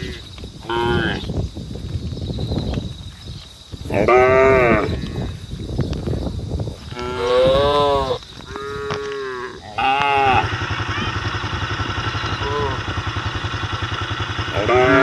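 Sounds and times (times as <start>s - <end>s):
cattle mooing: 6.9s - 11.1s, 14.4s - 15.0s
small motor engine running: 9.8s - 15.0s.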